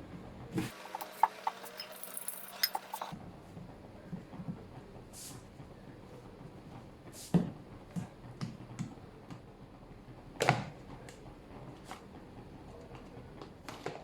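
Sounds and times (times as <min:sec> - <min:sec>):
kitchen containers knocking: 0:00.7 - 0:03.1.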